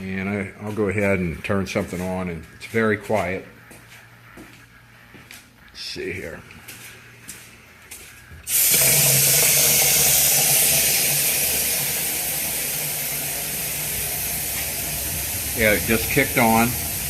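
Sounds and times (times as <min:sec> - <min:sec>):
water tap running with hiss: 0:08.5 - 0:17.0.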